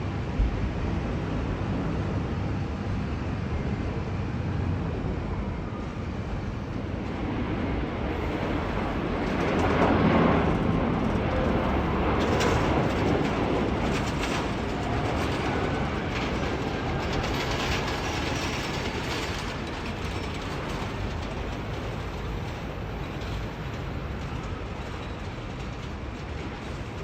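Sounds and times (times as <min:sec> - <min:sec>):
jet engine rushing: 0:04.8 - 0:21.3.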